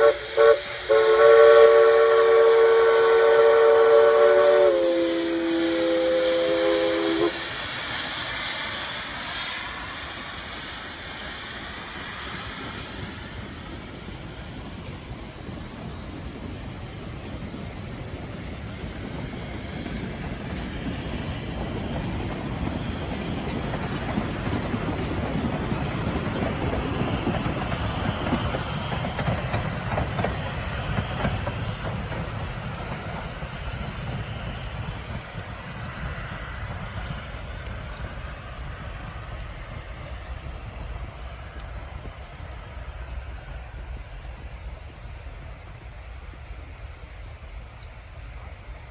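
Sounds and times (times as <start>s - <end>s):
steam locomotive whistle: 0.0s - 9.5s
freight train rumbling: 0.0s - 48.9s
steam hissing: 0.0s - 48.9s.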